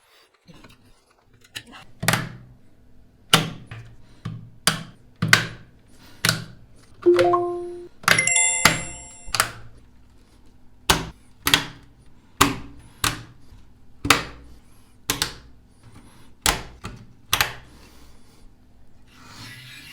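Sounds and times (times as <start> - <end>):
high ringing chime: 7.1 - 9.4.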